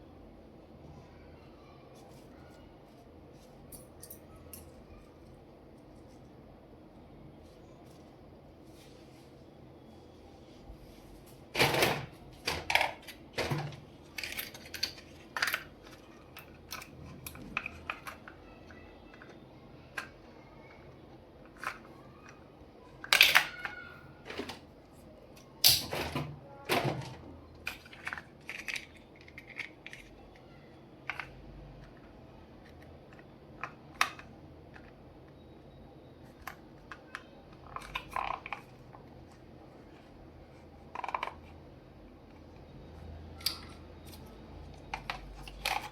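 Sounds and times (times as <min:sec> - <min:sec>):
plastic toys clicking and tapping: 0:02.0 - 0:05.4, 0:11.6 - 0:24.7, 0:25.3 - 0:35.4, 0:36.2 - 0:41.6, 0:42.3 - 0:45.9.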